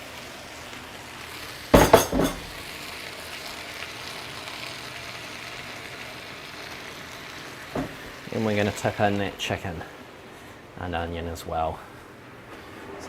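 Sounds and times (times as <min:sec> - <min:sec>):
frying sizzle: 0:00.0 - 0:10.6
vegetables knocking into a pan: 0:01.8 - 0:02.6, 0:07.7 - 0:08.1.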